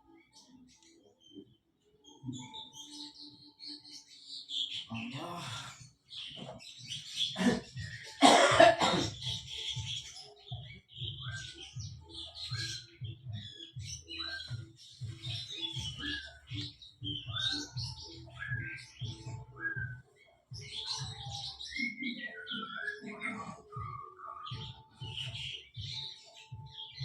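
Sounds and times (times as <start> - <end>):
bird chirping: 0.0 - 27.0
person coughing: 7.4 - 9.2
soft low thumps: 9.0 - 21.6.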